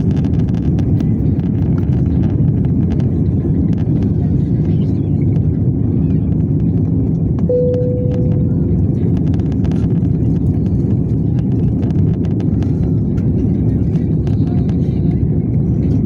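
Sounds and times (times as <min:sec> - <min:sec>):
airliner engine rumble: 0:00.0 - 0:16.0
short cabin tone: 0:07.5 - 0:08.9.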